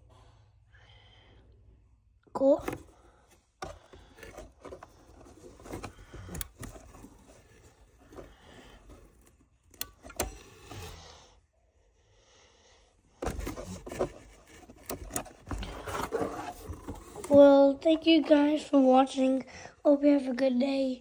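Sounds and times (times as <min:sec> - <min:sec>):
hard objects clicking and knocking: 0:02.4 - 0:11.0, 0:13.2 - 0:17.6.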